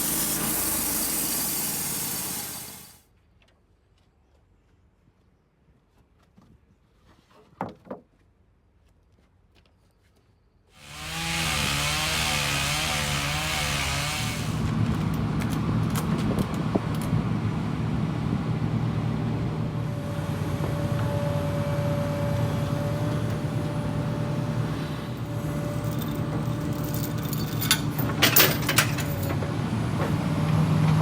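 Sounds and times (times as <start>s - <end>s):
small gasoline engine running: 0.0s - 3.0s, 10.8s - 31.0s.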